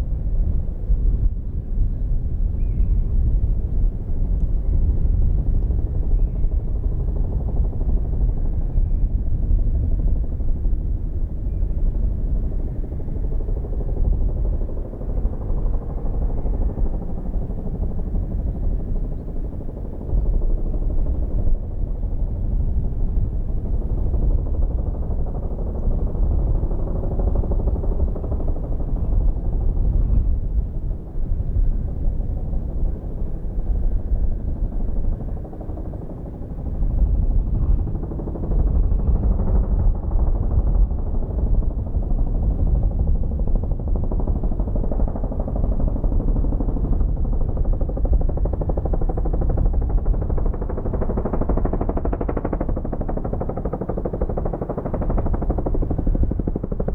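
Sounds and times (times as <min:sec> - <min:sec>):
helicopter rotor beating: 0:12.8 - 0:56.9.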